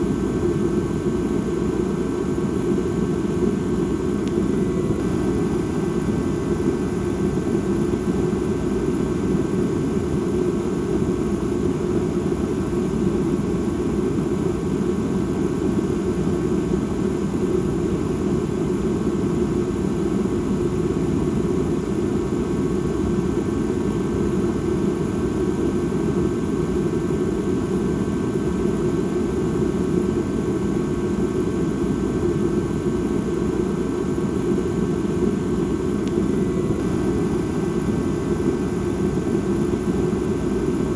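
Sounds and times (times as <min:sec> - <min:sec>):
low ambient drone: 0:00.0 - 0:14.5, 0:31.0 - 0:40.9.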